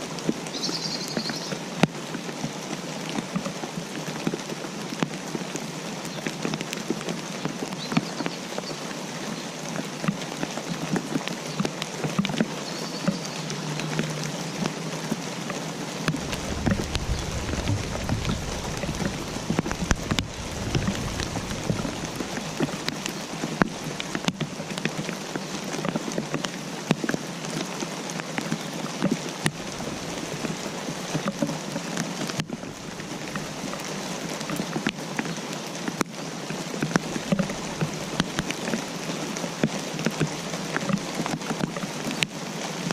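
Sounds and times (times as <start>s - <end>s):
raindrops ticking on a surface: 0.0s - 42.9s
steady rain: 0.0s - 42.9s
low rumble: 16.0s - 24.2s, 29.5s - 31.1s.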